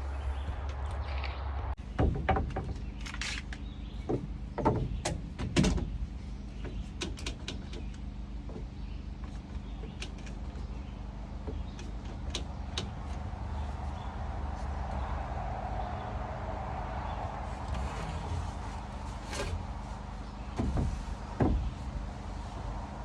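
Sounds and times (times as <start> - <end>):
wooden boards knocking and scraping: 0.6 - 3.2, 4.0 - 6.0, 20.4 - 22.0.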